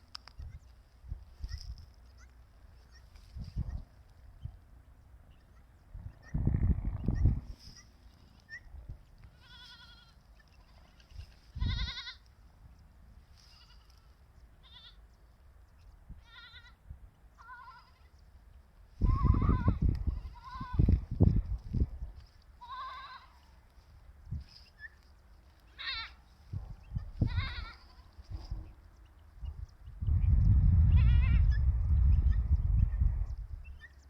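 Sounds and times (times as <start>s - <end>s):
goats or sheep bleating: 9.3s - 12.3s, 13.4s - 15.0s, 16.2s - 16.8s, 17.4s - 18.1s, 19.0s - 21.0s, 22.6s - 23.6s, 25.6s - 26.2s, 27.2s - 28.2s, 30.9s - 31.6s.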